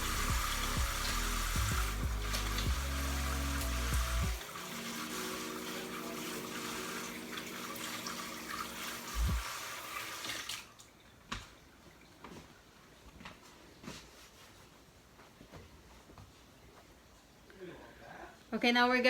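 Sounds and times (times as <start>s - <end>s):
tap running water: 0.0s - 12.5s.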